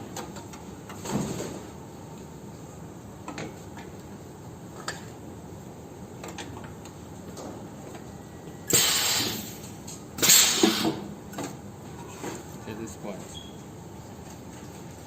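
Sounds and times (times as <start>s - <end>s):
compressed air hissing: 8.7s - 9.5s, 10.2s - 11.0s.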